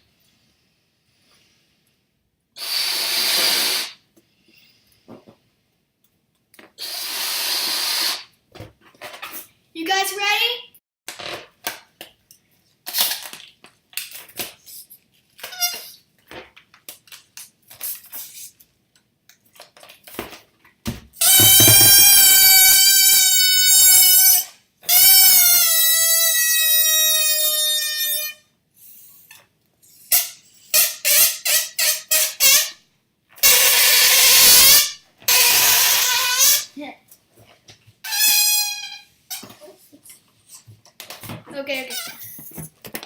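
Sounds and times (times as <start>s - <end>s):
balloon neck squealing: 2.6s - 4.0s, 6.8s - 8.3s, 15.4s - 16.0s, 21.2s - 32.8s, 33.4s - 36.8s, 38.0s - 39.7s, 41.8s - 42.5s
balloon short squeaks: 2.6s - 4.0s, 6.8s - 8.3s, 14.6s - 16.1s, 21.2s - 32.8s, 33.4s - 36.8s, 38.0s - 40.7s, 41.7s - 42.5s
loud noisy burst: 2.6s - 4.0s
rubber balloon handling: 21.2s - 23.0s.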